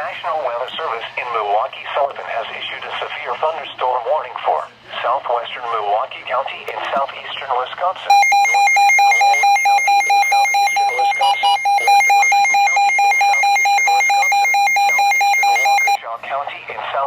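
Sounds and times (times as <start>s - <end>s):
pulsing electronic alert tone: 8.1s - 16.0s.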